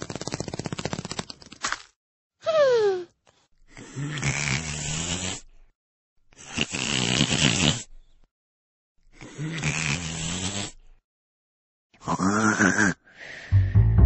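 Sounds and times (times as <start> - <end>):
cartoon character snoring: 3.7 - 5.6, 6.4 - 8.0, 9.1 - 11.0, 12.0 - 13.1.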